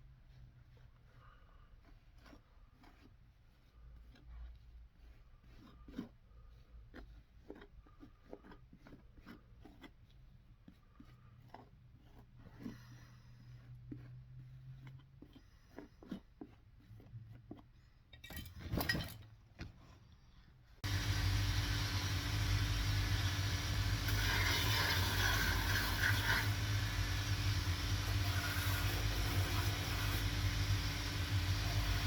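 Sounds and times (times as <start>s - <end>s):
electric motor humming: 20.8s - 32.0s
harsh grinding: 20.8s - 32.0s.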